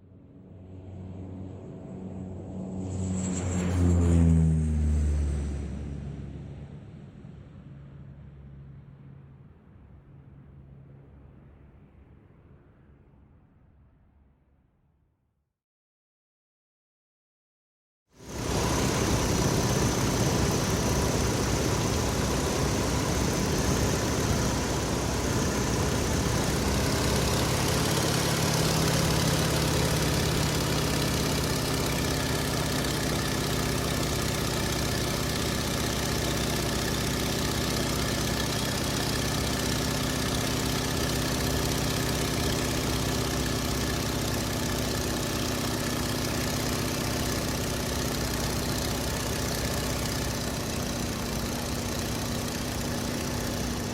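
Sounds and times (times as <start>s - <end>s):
vehicle engine idling: 18.2s - 53.9s.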